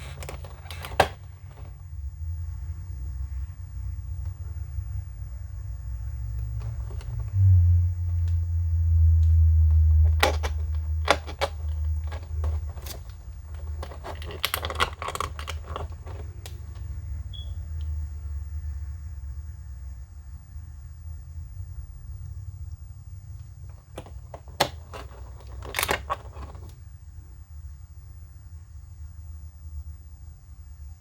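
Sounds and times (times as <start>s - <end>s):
packaging clicks and rustles: 0.0s - 1.8s, 6.6s - 7.4s, 9.7s - 16.9s, 23.7s - 26.8s.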